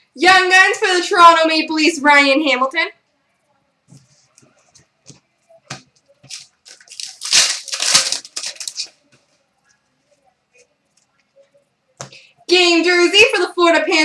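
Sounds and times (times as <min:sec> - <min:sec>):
wrapper crinkling and tearing: 0:06.3 - 0:09.0.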